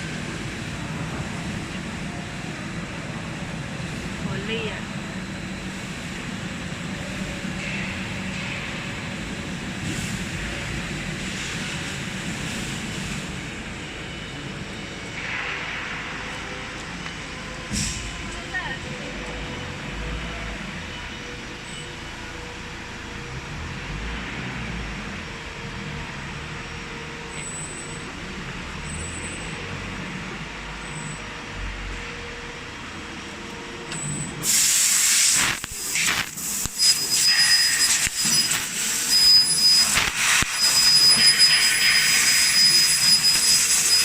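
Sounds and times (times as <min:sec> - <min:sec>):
laser cutting machine hum: 0:00.0 - 0:44.0
assist gas hissing: 0:34.4 - 0:44.0.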